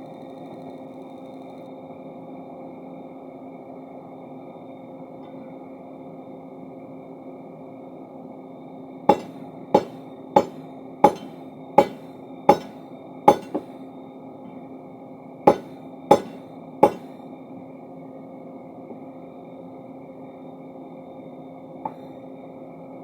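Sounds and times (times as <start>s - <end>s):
hammer striking steel: 9.1s - 13.8s, 15.5s - 17.2s
steady machine hum: 9.1s - 13.8s, 15.5s - 17.2s.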